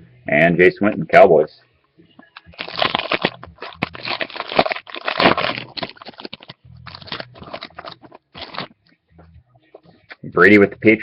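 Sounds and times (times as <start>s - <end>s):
foil wrapper tearing and crinkling: 2.4s - 8.7s.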